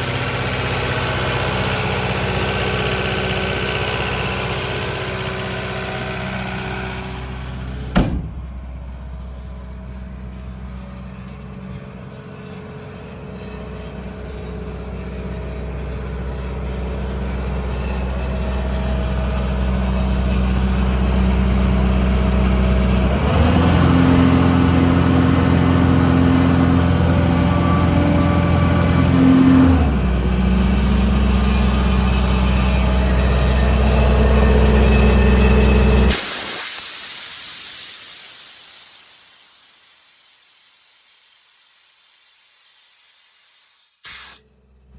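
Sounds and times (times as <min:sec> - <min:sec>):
diesel compressor engine running: 0:00.0 - 0:44.9
sharp knock: 0:07.9 - 0:08.6.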